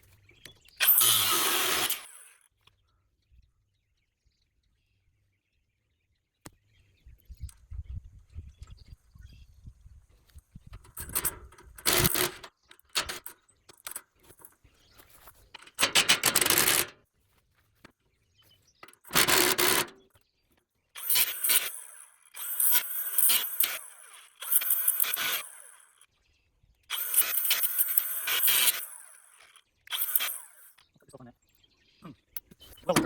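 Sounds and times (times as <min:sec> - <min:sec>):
quick clicks and rattles: 0:10.7 - 0:17.0, 0:18.8 - 0:20.1.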